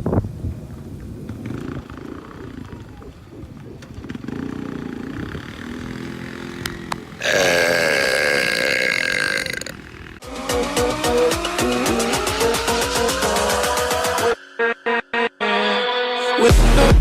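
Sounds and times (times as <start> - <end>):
man burping: 7.2 - 10.0.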